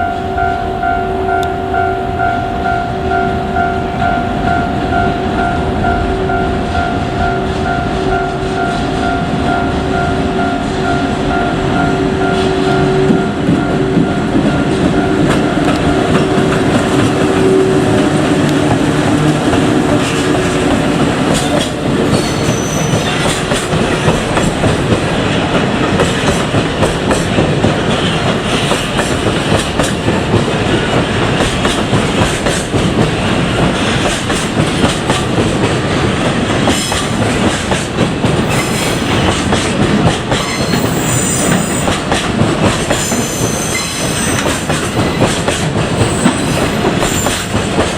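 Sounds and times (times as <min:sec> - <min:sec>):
freight train rolling past: 0:00.0 - 0:47.9
high wheel squeals: 0:22.0 - 0:23.3, 0:38.4 - 0:39.4, 0:40.4 - 0:42.0, 0:42.9 - 0:45.2, 0:45.9 - 0:47.5.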